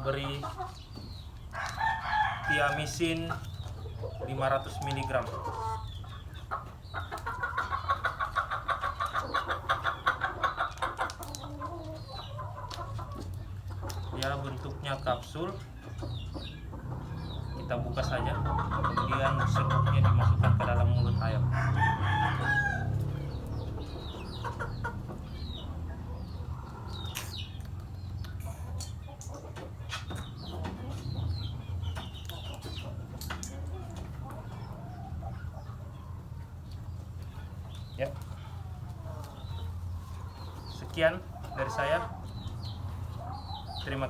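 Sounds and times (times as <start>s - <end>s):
chicken clucking: 0.0s - 44.0s
rooster crowing: 1.6s - 2.9s, 21.4s - 23.0s.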